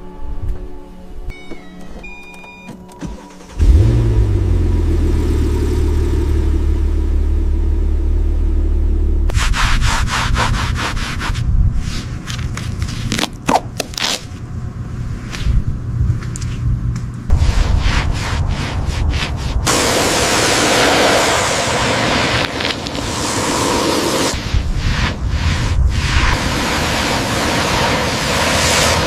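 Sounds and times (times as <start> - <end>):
low machine hum: 3.5 - 9.3, 14.3 - 20.0
rubbing or sanding strokes: 9.3 - 13.2, 17.3 - 29.0.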